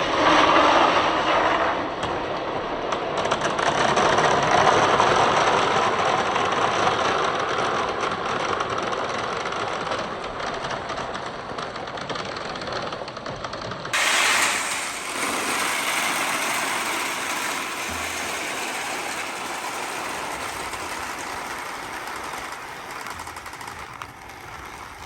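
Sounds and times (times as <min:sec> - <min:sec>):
marbles rattling on wooden ramps: 0:06.6 - 0:25.0.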